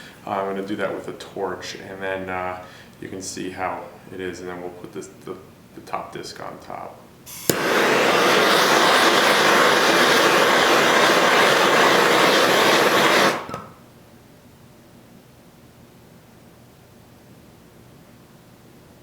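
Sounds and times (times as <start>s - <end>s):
torch clicking alight: 7.3s - 13.7s
torch flame hissing: 7.3s - 13.8s.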